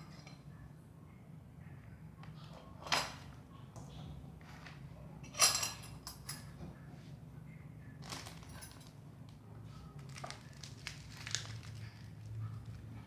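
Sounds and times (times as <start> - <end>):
kitchenware clattering: 5.2 - 6.6.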